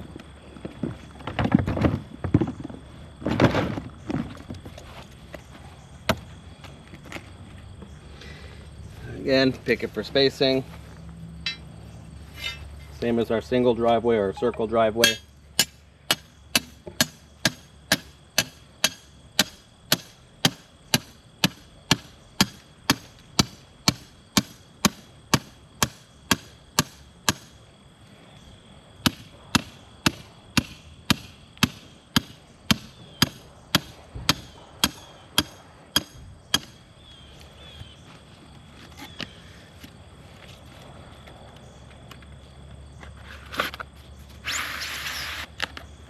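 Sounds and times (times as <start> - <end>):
hammer striking a stake: 11.4 - 11.6, 15.0 - 27.6, 29.0 - 36.8.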